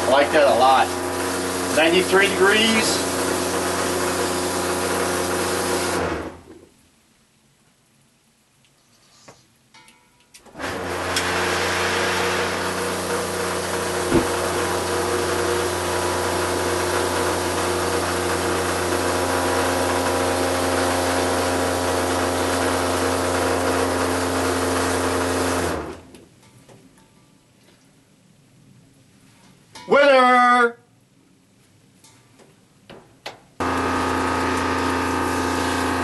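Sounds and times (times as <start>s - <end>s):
shower water spraying: 0.0s - 6.1s, 11.2s - 18.3s, 33.6s - 36.0s
electric water pump humming: 0.0s - 6.6s, 10.5s - 26.1s, 33.6s - 36.0s.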